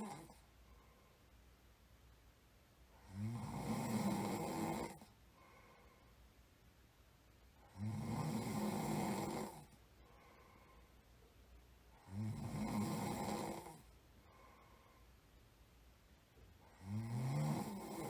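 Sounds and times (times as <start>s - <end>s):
person snoring: 0.0s - 0.4s, 3.0s - 5.1s, 7.7s - 9.7s, 11.9s - 14.6s, 16.6s - 18.0s.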